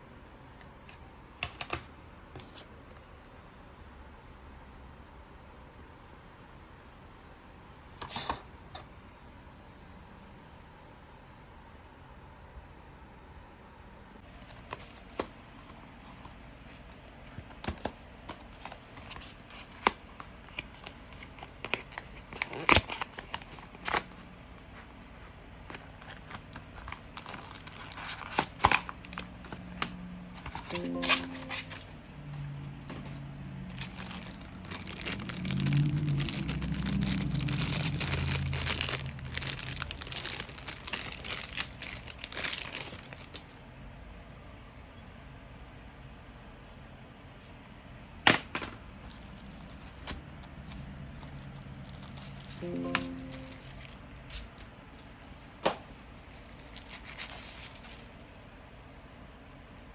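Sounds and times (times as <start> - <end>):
plastic packaging crinkling: 25.7 - 29.8, 33.7 - 43.6, 49.0 - 54.7, 55.9 - 59.2
music with pitched tones: 52.6 - 53.8.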